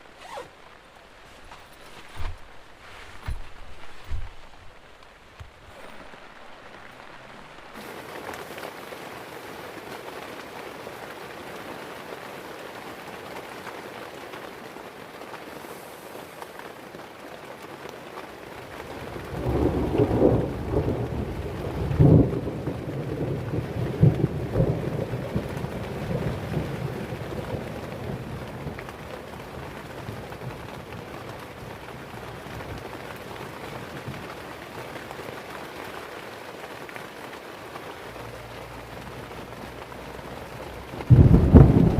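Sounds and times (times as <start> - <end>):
heavy rain falling: 0.0 - 41.9
thunder rolling: 40.8 - 41.9.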